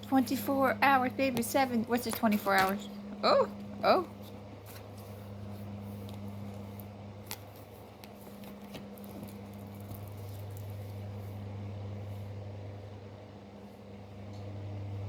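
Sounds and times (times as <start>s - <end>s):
steady low hum: 0.0s - 15.0s
cards clicking and rustling: 1.5s - 2.8s, 6.0s - 10.8s.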